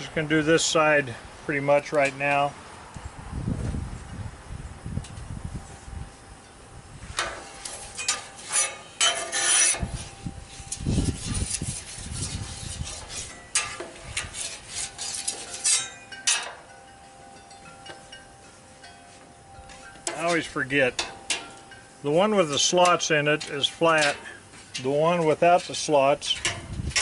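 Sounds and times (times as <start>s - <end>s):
metal spatulas scraping griddle: 7.1s - 16.7s, 19.1s - 27.0s.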